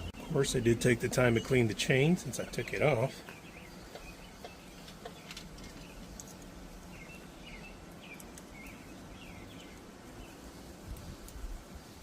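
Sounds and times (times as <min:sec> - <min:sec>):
faint background noise: 0:00.0 - 0:12.0
bird chirping falling calls: 0:02.6 - 0:06.2, 0:06.8 - 0:10.4.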